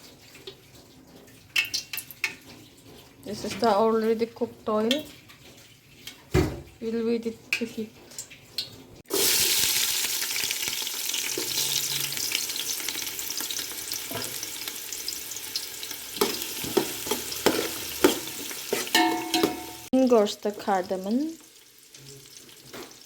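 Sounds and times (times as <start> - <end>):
oil sizzling in a pan: 0.0 - 23.0
utensil knocking against pan: 16.2 - 19.9.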